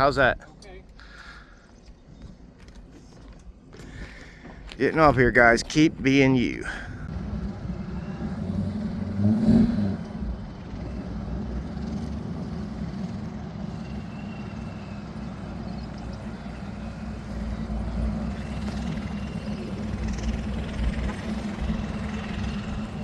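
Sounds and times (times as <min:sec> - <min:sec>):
car engine running: 0:15.2 - 0:23.0.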